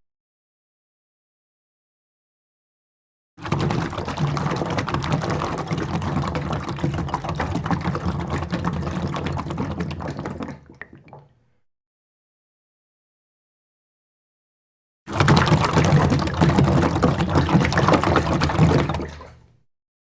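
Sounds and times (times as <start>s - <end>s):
liquid dripping: 3.4s - 11.4s
liquid pouring and bubbling: 3.4s - 11.5s, 15.1s - 19.5s.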